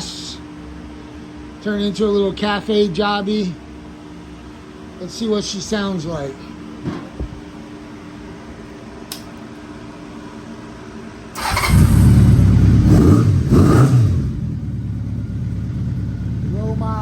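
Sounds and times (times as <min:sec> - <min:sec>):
motorcycle engine revving and idling: 0:11.4 - 0:17.0.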